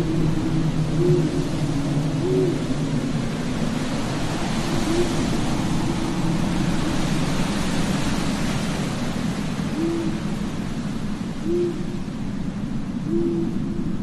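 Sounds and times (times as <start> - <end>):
owl hoot: 0.0 - 1.5, 2.2 - 2.6, 4.8 - 5.3, 9.7 - 10.2, 11.4 - 12.0, 13.0 - 13.6
steady wind-like rushing: 0.0 - 14.0.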